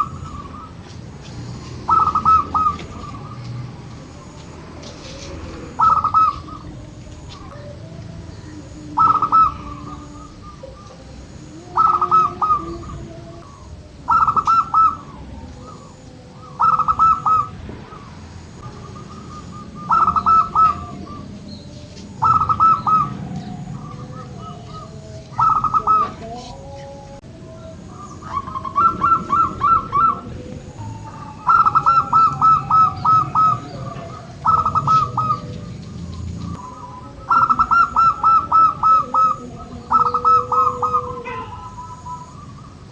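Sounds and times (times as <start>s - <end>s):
doves cooing: 0.0s - 42.9s.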